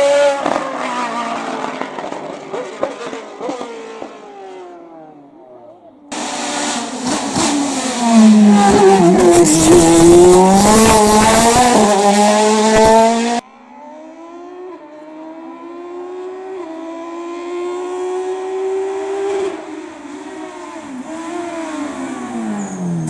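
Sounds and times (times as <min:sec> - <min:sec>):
distant race car upshifting: 0:00.0 - 0:13.4
race car engine revving: 0:00.0 - 0:13.4.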